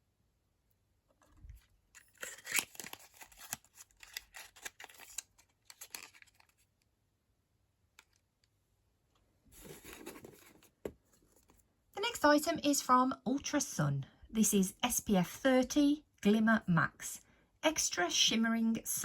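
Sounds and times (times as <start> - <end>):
packaging rustling: 1.5 - 6.7, 9.6 - 11.6.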